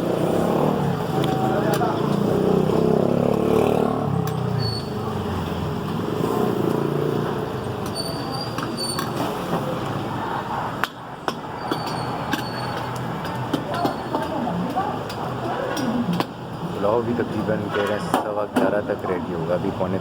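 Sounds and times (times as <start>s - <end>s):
vehicle engine droning: 0.0s - 10.6s
street traffic din: 0.0s - 20.0s.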